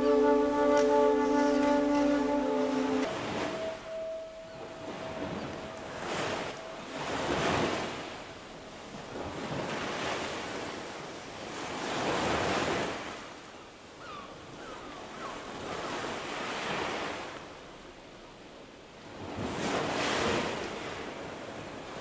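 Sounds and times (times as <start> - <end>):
ocean waves washing in: 0.0 - 13.4, 19.0 - 22.0.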